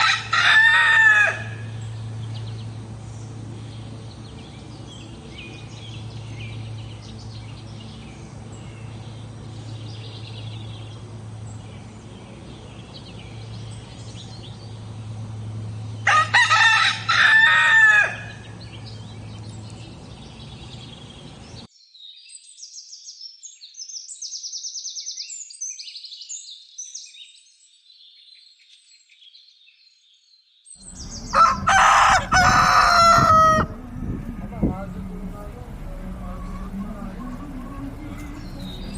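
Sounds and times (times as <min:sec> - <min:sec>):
rooster crowing: 0:00.0 - 0:01.8, 0:16.0 - 0:18.6, 0:30.9 - 0:38.9
steady low hum: 0:30.8 - 0:38.9.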